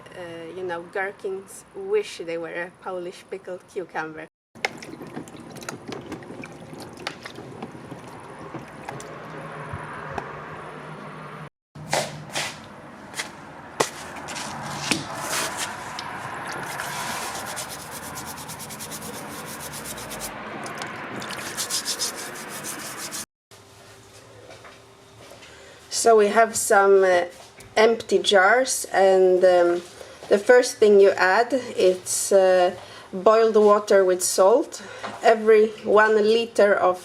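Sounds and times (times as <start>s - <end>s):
hands scrubbing cucumbers: 16.4s - 23.3s.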